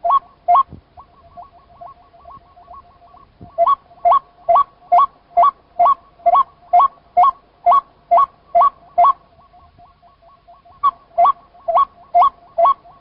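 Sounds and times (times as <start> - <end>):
fainter bird calls: 0.0 - 13.0.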